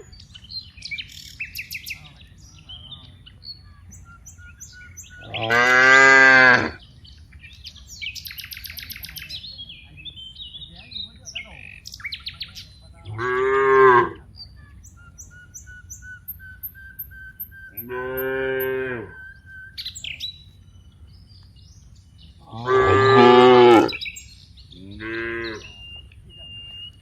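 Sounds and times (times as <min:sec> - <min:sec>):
small birds chirping: 0:00.0 - 0:27.0
cows mooing: 0:05.2 - 0:06.8, 0:13.1 - 0:14.2, 0:17.8 - 0:19.2, 0:22.5 - 0:24.0, 0:24.8 - 0:25.8.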